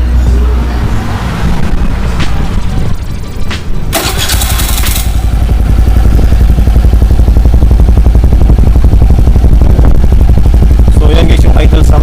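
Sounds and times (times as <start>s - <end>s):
scooter engine starting and idling: 3.9s - 9.5s.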